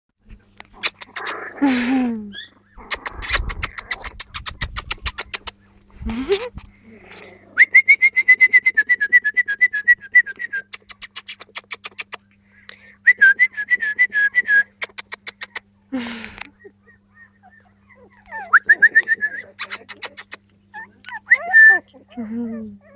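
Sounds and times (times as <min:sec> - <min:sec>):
puppies whining: 0:00.6 - 0:07.9, 0:10.7 - 0:12.2, 0:14.7 - 0:22.9.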